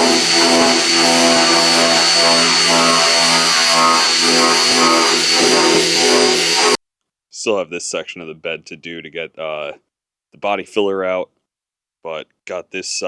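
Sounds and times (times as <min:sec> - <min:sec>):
grinder whining on sheet metal: 0:00.0 - 0:06.8.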